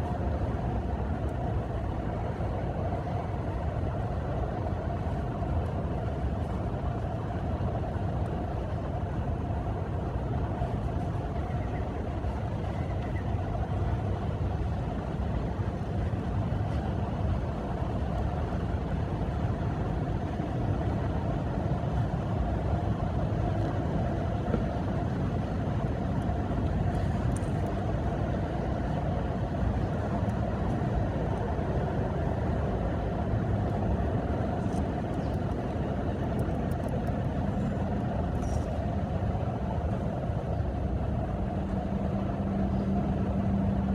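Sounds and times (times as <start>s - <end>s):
faint constant hum: 0.0s - 43.9s
low background rumble: 0.0s - 43.9s.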